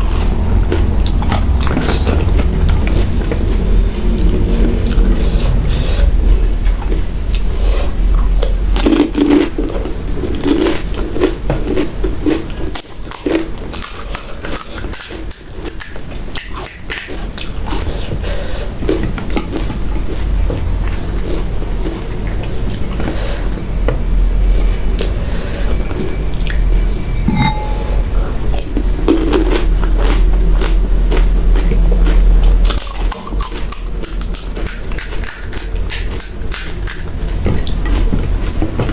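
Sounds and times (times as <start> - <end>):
steady low hum: 0.0 - 15.3, 17.2 - 38.9
chewing: 0.0 - 23.6, 24.5 - 27.9, 28.5 - 38.9.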